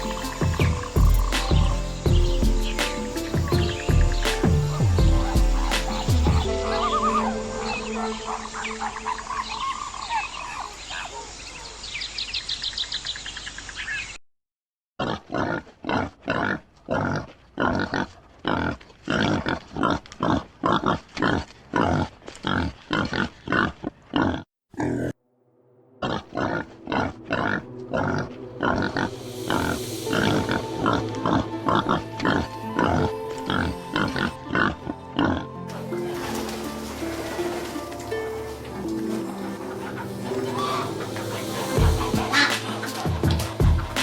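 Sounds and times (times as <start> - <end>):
pig grunting: 15.0 - 25.2, 26.0 - 36.4, 38.7 - 44.0.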